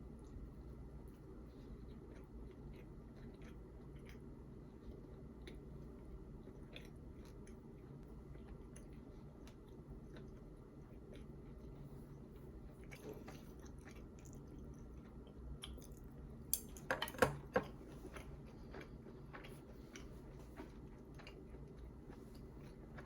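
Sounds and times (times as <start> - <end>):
person chewing and biting: 6.3 - 11.8, 17.7 - 23.0.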